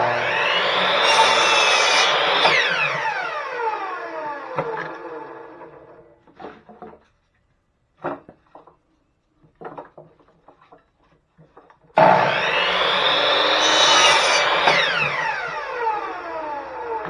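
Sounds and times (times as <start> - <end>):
power tool running: 0.0 - 3.5, 12.0 - 16.8.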